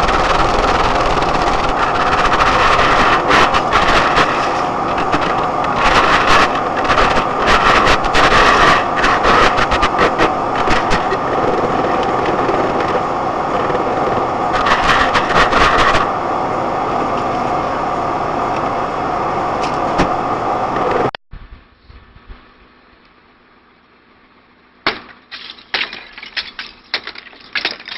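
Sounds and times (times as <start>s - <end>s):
sharp clicks and cracks: 0.0s - 16.1s, 24.9s - 27.9s
vehicle road noise: 0.0s - 27.9s.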